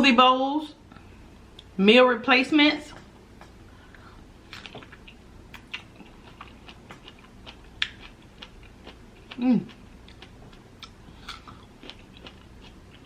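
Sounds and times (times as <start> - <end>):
wet chewing mouth sounds: 4.5 - 13.0.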